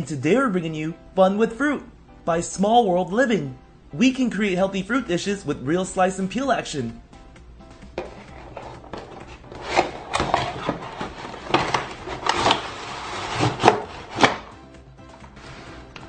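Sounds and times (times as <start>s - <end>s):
scraping rustle: 8.0s - 14.4s.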